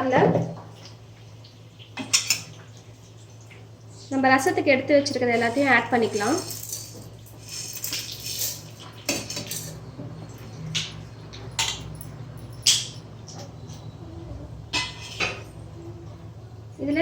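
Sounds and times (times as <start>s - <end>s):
utensils clinking against jar: 6.0s - 9.9s, 10.6s - 13.1s.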